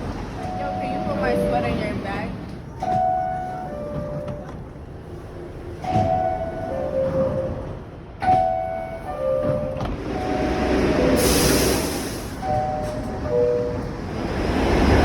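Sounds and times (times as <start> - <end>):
train rumble: 0.0 - 15.0
air hiss: 11.2 - 12.4.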